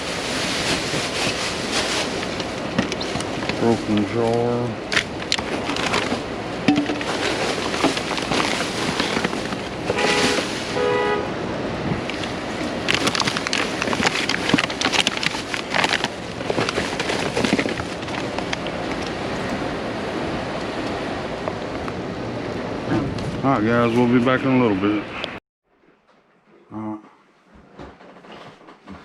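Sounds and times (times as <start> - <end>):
plastic bags crinkling and rustling: 0.0 - 11.0, 12.1 - 19.2.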